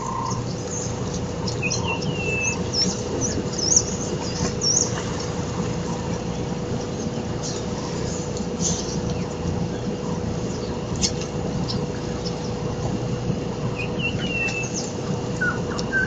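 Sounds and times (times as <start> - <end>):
birds chirping: 0.0 - 16.0
steady background rush: 0.0 - 16.0
bird whistle: 1.6 - 4.9, 13.7 - 16.0.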